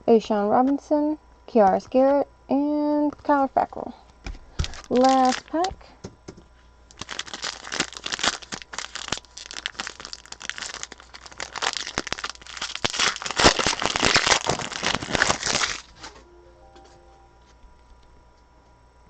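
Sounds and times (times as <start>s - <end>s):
card pack wrapper crinkling: 4.5s - 5.9s, 6.9s - 16.1s.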